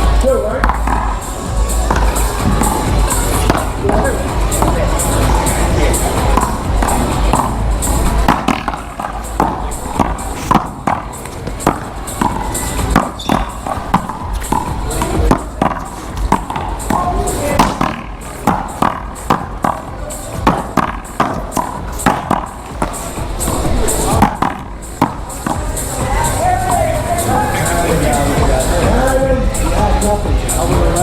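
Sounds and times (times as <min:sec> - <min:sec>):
background music: 0:00.0 - 0:31.0
voices: 0:00.0 - 0:31.0
paddles smacking rubber ball: 0:00.6 - 0:01.2, 0:01.9 - 0:05.5, 0:06.2 - 0:25.7
ball hitting wall: 0:08.2 - 0:25.6.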